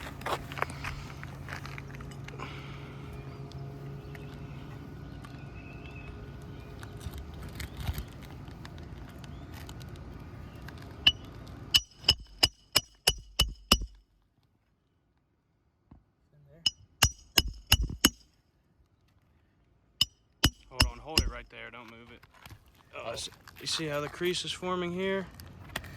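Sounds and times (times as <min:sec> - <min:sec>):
low hum: 0:00.0 - 0:14.1, 0:20.4 - 0:21.7
hammer striking nail: 0:11.1 - 0:14.0, 0:16.7 - 0:18.3, 0:20.4 - 0:21.5.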